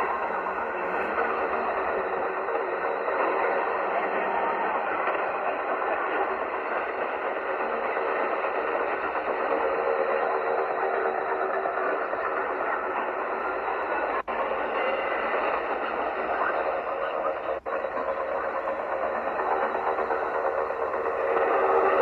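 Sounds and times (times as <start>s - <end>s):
faint steady radio whistles: 0.0s - 22.0s
radio static hiss: 12.1s - 22.0s.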